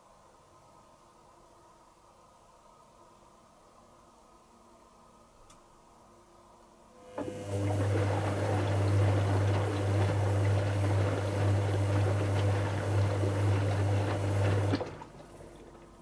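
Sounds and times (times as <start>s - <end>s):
washing machine hum: 7.0s - 16.0s
water rushing in washing machine: 7.1s - 16.0s.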